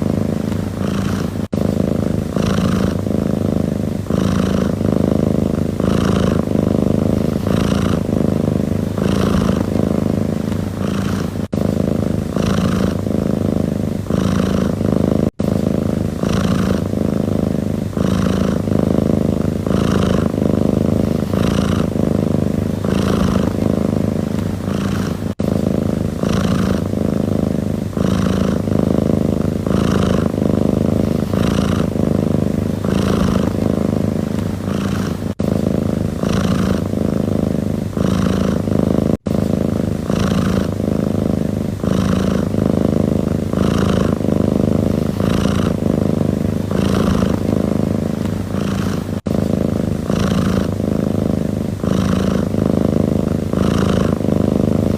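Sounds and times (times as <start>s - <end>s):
cat purring: 0.0s - 54.9s.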